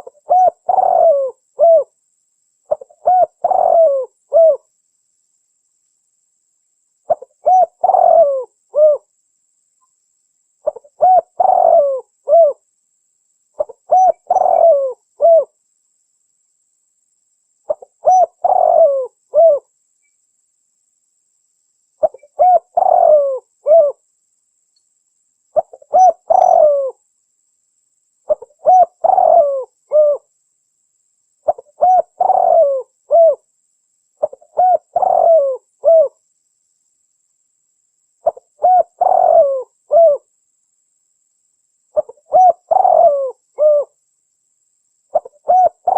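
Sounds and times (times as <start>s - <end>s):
dove cooing: 0.0s - 1.9s, 2.7s - 4.7s, 7.1s - 9.1s, 10.6s - 12.6s, 13.6s - 15.5s, 17.7s - 19.7s, 22.0s - 24.0s, 25.6s - 27.0s, 28.3s - 30.3s, 31.4s - 33.4s, 34.2s - 36.2s, 38.2s - 40.3s, 42.0s - 44.0s, 45.1s - 45.9s.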